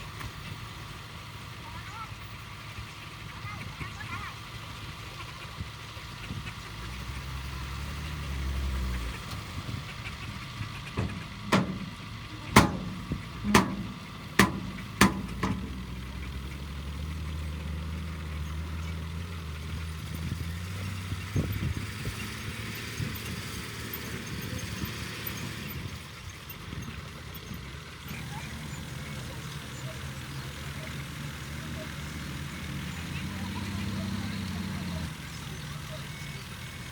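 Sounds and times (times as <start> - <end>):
heavy diesel engine running: 0.0 - 36.9
sharp knocks: 10.9 - 16.2.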